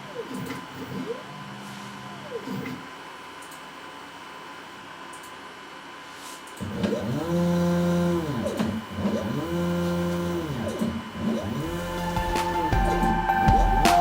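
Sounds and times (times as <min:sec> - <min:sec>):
stepper motors whining: 0:06.7 - 0:14.0.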